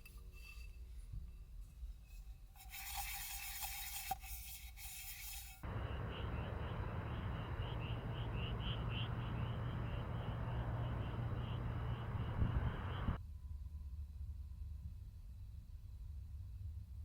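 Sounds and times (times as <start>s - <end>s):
low wind rumble: 5.6s - 13.2s.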